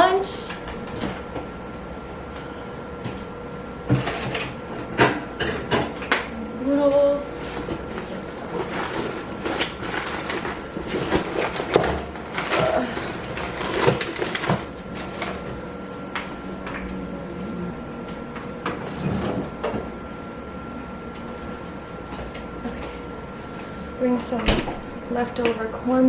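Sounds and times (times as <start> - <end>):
kitchen containers and utensils clattering: 7.3 - 15.6.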